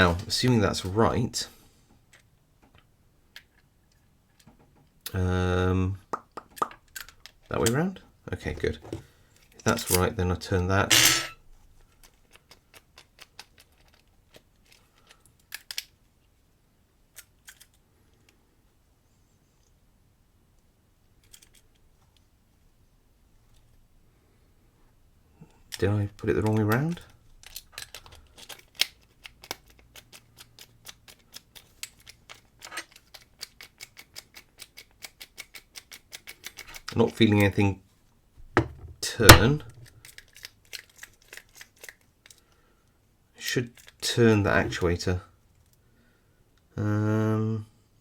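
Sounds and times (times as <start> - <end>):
padlock parts clicking: 12.0 - 16.0, 26.4 - 37.0, 39.3 - 42.4.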